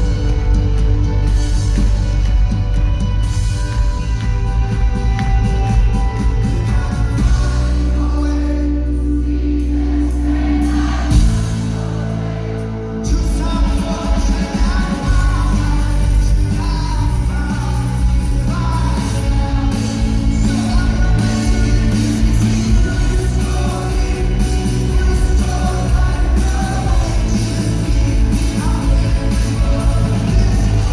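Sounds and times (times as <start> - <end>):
lead singer: 0.0 - 30.9
live rock band: 0.0 - 30.9.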